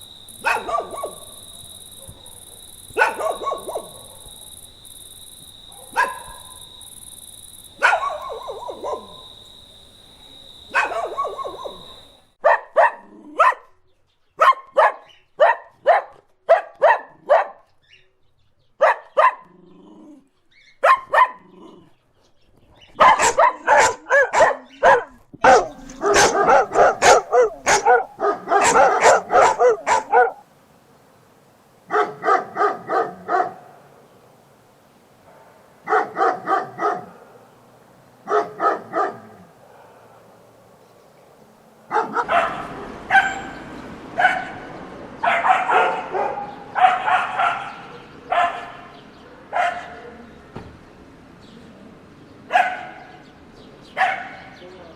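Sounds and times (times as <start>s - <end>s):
low background noise: 0.0s - 54.9s
dog barking: 0.4s - 4.5s, 5.7s - 6.7s, 7.8s - 9.3s, 10.7s - 13.7s, 14.4s - 17.7s, 18.8s - 19.5s, 20.8s - 21.5s, 23.0s - 30.4s, 31.9s - 33.8s, 35.2s - 37.6s, 38.2s - 40.4s, 41.9s - 43.6s, 44.2s - 50.2s, 52.5s - 53.2s, 54.0s - 54.6s.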